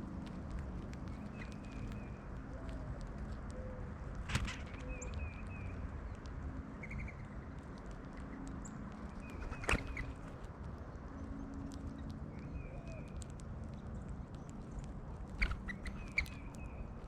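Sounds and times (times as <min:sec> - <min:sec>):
birds chirping: 0:15.4 - 0:17.0.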